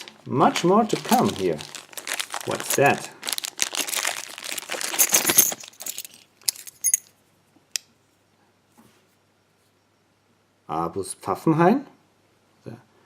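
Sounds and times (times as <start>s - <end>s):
packaging crinkling: 0.0s - 6.2s
keys and metal parts clinking: 1.0s - 1.4s, 4.6s - 7.2s.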